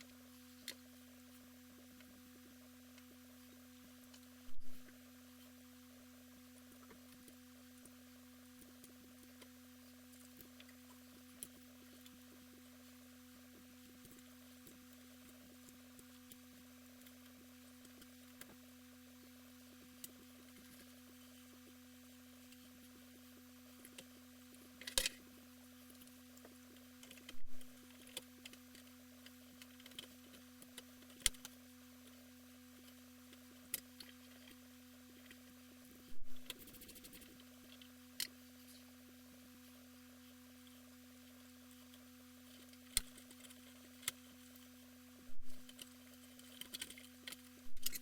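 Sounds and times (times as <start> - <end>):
faint electrical hum: 0.0 - 48.0
clicks of parts and tools: 24.8 - 25.2, 45.4 - 48.0
small hardware clicking: 24.8 - 25.2, 27.0 - 31.6, 45.5 - 48.0.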